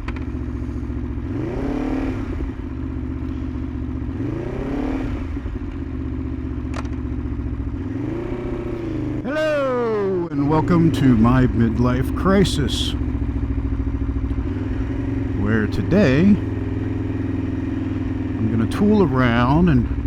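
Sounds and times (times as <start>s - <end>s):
motorcycle engine idling and revving: 0.0s - 20.0s.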